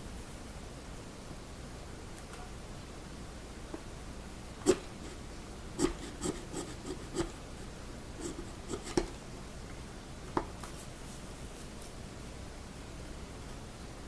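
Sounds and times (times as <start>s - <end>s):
chisel scraping wood: 5.8s - 7.4s, 8.2s - 9.1s.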